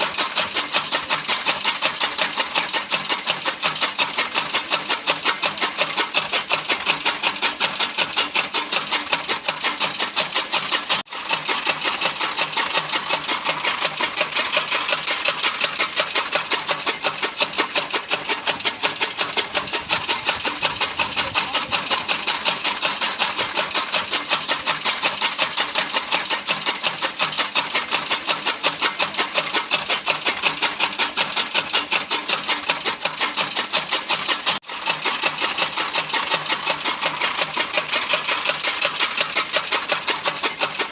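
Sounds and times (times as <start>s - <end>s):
chaff cutter chopping: 5.4s - 27.8s.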